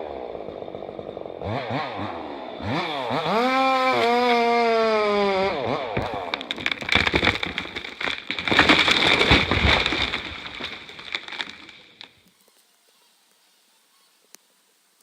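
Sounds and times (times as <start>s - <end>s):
tree cracking and crashing down: 3.2s - 12.3s.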